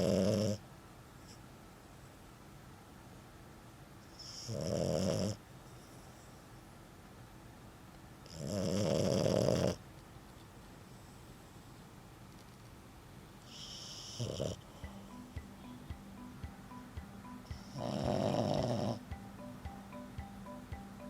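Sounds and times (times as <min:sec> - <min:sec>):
dog snoring: 0:00.0 - 0:00.6, 0:04.1 - 0:06.3, 0:08.2 - 0:09.8, 0:13.5 - 0:14.8, 0:17.6 - 0:19.0.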